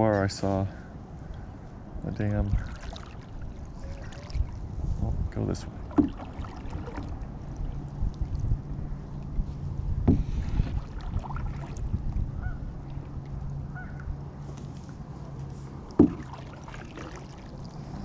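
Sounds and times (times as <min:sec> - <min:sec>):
water: 0:00.0 - 0:18.0
wind: 0:00.0 - 0:18.0
knocks on kayak hull: 0:05.9 - 0:07.0, 0:10.0 - 0:10.8, 0:15.9 - 0:16.5.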